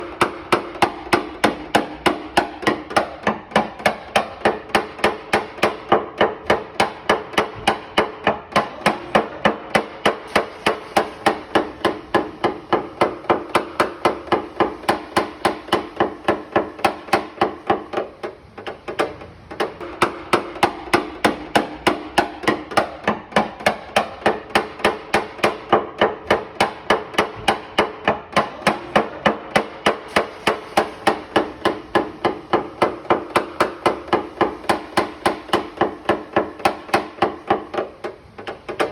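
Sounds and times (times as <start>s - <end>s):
hammer tapping sheet metal: 0.0s - 38.9s.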